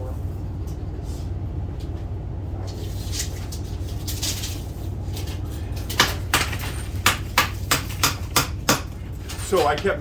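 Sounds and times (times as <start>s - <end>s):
low steady hum: 0.0s - 10.0s
hammer striking wood: 6.3s - 8.9s.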